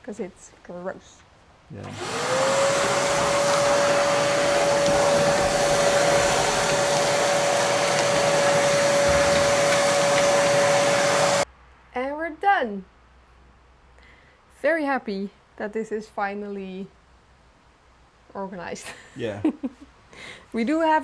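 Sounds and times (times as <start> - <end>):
vacuum cleaner running: 1.7 - 11.5.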